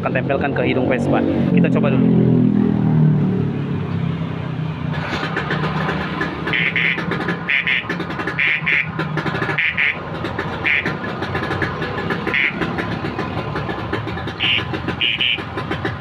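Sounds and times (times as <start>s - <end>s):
scooter engine running: 2.0s - 16.0s
shrill scooter horn beeps: 12.3s - 12.7s, 14.3s - 15.6s.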